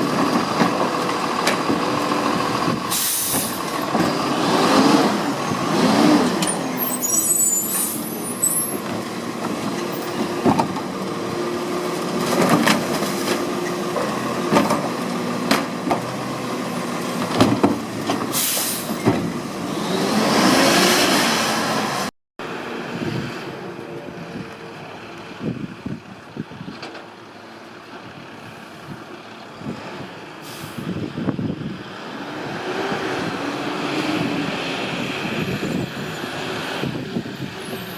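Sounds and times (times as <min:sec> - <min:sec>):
garbage truck diesel engine: 0:00.0 - 0:37.9
air brake hiss: 0:02.9 - 0:03.6, 0:18.3 - 0:19.0, 0:30.4 - 0:30.9.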